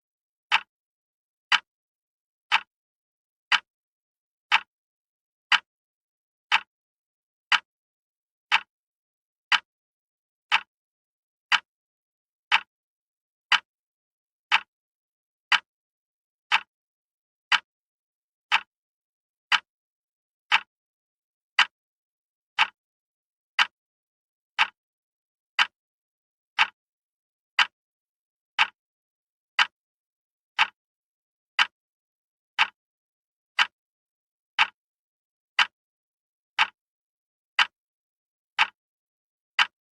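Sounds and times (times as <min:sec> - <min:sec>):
wall clock ticking: 0:00.5 - 0:00.7, 0:01.5 - 0:01.7, 0:02.5 - 0:02.7, 0:03.5 - 0:03.7, 0:04.5 - 0:04.7, 0:06.5 - 0:06.7, 0:07.5 - 0:07.7, 0:08.5 - 0:08.7, 0:10.5 - 0:10.7, 0:12.5 - 0:12.7, 0:14.5 - 0:14.7, 0:16.5 - 0:16.7, 0:18.5 - 0:18.7, 0:20.5 - 0:20.7, 0:21.5 - 0:21.8, 0:22.6 - 0:22.8, 0:23.6 - 0:23.8, 0:24.6 - 0:24.8, 0:25.6 - 0:25.8, 0:26.6 - 0:26.8, 0:27.6 - 0:27.8, 0:28.6 - 0:28.8, 0:29.6 - 0:29.8, 0:30.6 - 0:30.8, 0:31.6 - 0:31.8, 0:32.6 - 0:32.8, 0:33.6 - 0:33.8, 0:34.6 - 0:34.8, 0:35.6 - 0:35.8, 0:36.6 - 0:36.8, 0:37.6 - 0:37.8, 0:38.6 - 0:38.8, 0:39.6 - 0:39.9.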